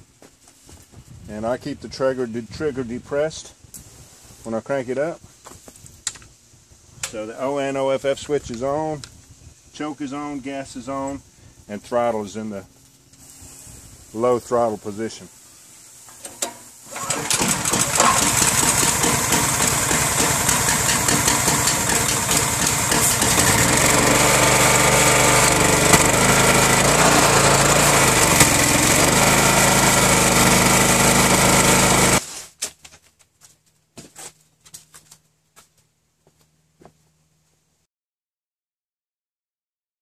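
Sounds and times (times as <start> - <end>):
gasoline engine running: 16.9 - 32.2.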